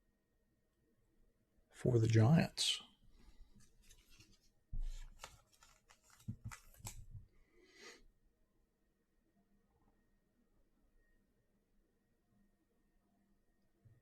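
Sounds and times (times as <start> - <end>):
packaging rustle: 3.6 - 7.2
cardboard scraping and tapping: 3.8 - 7.0.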